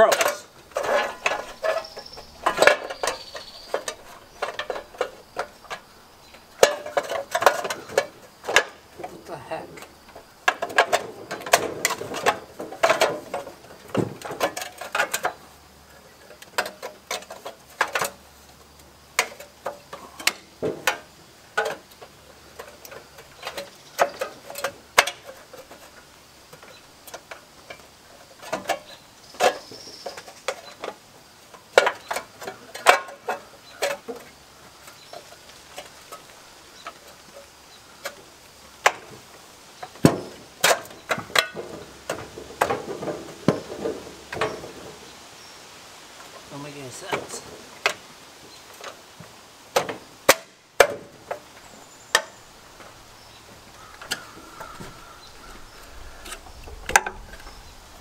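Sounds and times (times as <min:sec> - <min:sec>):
hand tools clinking on metal parts: 0:00.0 - 0:18.6, 0:19.2 - 0:39.2, 0:39.8 - 0:44.9.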